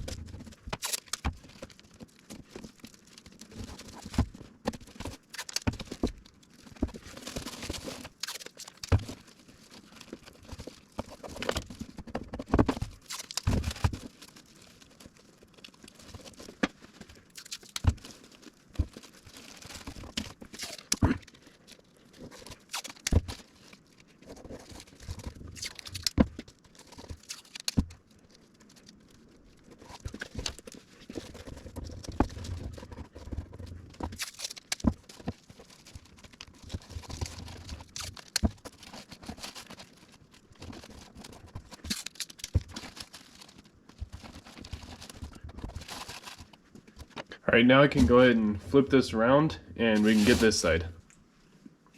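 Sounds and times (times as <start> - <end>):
plastic sheet crinkling: 0.0 - 51.0
tape ripping: 0.8 - 1.4, 5.0 - 5.9, 7.3 - 9.2, 12.5 - 15.1, 17.3 - 21.4, 22.2 - 23.8, 24.4 - 27.9, 34.0 - 47.2, 49.9 - 50.8.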